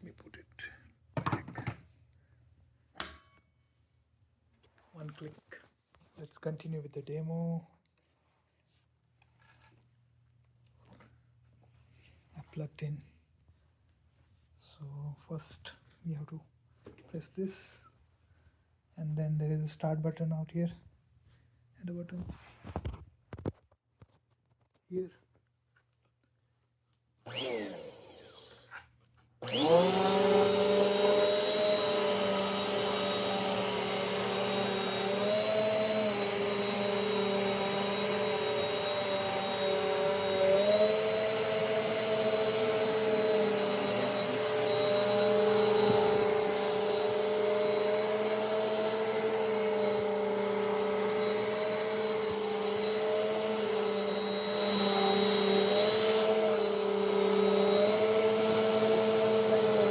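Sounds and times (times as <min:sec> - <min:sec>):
vacuum cleaner whining: 0:27.2 - 0:59.9.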